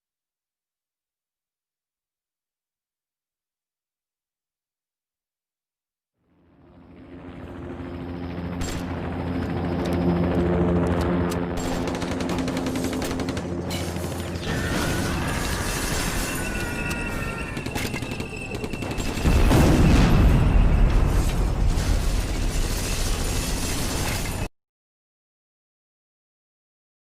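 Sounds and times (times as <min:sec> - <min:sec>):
heavy boom: 0:19.2 - 0:22.2.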